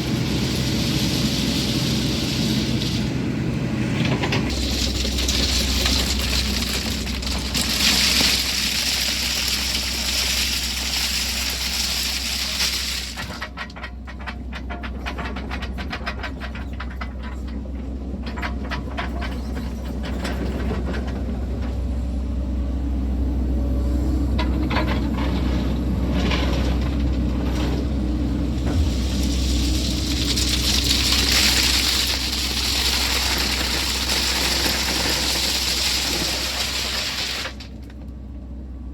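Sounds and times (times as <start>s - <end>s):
excavator engine running: 0.0s - 38.7s
crackle and clatter: 4.0s - 21.8s, 24.4s - 28.0s, 28.6s - 38.2s.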